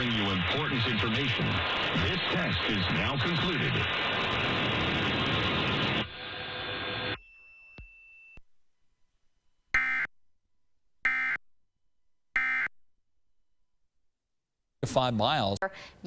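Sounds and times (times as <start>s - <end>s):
broadcast audio: 0.0s - 7.2s, 14.8s - 16.0s.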